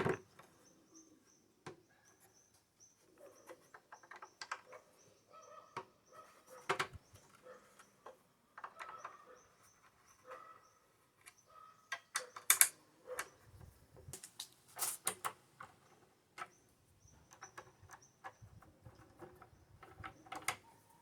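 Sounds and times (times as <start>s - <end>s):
clicks of handled objects: 12.0s - 13.3s, 14.1s - 15.7s.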